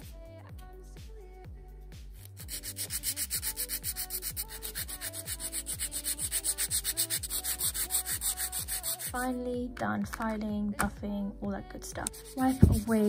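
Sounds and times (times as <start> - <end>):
nail file rasping: 2.2 - 9.3, 12.0 - 13.0.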